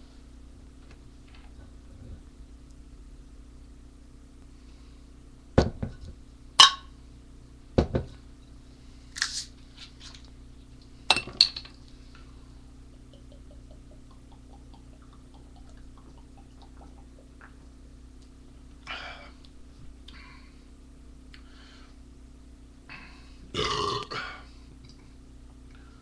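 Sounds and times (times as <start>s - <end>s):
glass bottles clinking: 6.6s - 6.9s.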